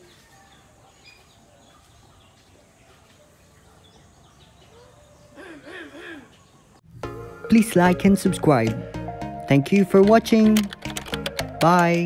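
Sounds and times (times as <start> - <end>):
faint birds chirping: 0.0 - 7.0.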